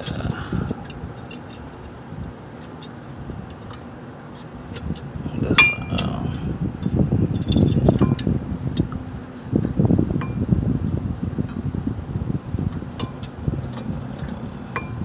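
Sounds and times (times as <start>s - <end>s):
metal on metal clink: 0.0s - 2.0s, 2.6s - 6.2s, 7.3s - 8.3s.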